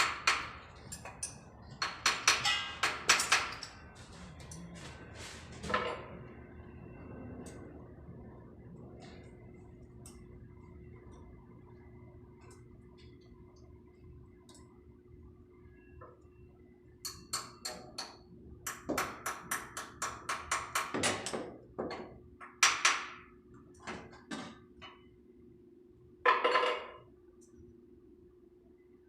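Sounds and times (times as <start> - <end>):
sharp knocks and clinks: 0.0 - 3.8
steady low hum: 0.0 - 18.8.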